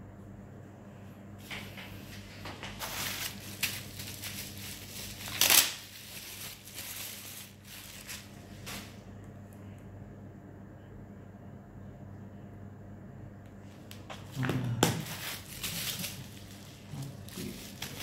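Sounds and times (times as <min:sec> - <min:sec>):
packaging rustling and crinkling: 0:02.1 - 0:09.0, 0:14.1 - 0:18.0.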